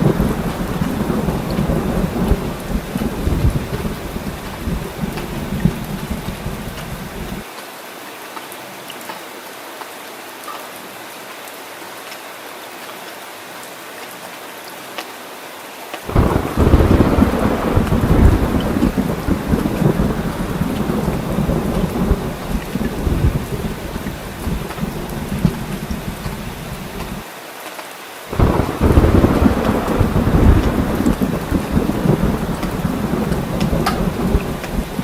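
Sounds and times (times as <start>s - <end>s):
deep rumbling thunder: 0.0s - 7.4s, 16.1s - 27.2s, 28.3s - 35.0s
heavy rain falling: 0.0s - 35.0s.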